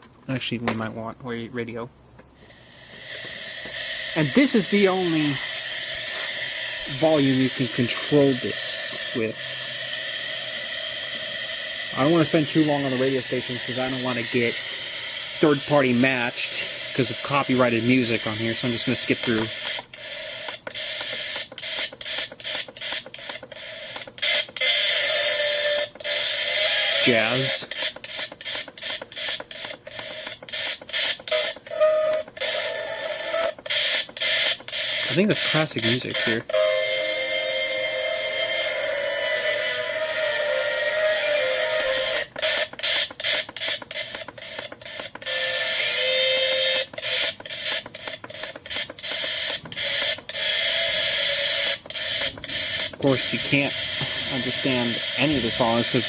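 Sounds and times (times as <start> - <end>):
radio static hiss: 0.3 - 36.5, 37.8 - 56.0
radio tuning clicks: 2.2 - 9.3, 15.3 - 36.5, 41.1 - 56.0
held radio tone: 2.4 - 30.4, 31.1 - 56.0.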